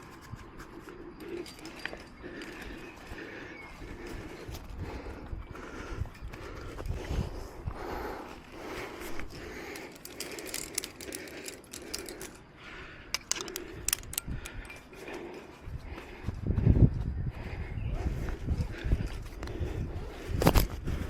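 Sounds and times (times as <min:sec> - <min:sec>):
carabiners clinking together: 0:01.2 - 0:03.0, 0:09.0 - 0:15.5
sharp metallic clicks: 0:09.3 - 0:14.9.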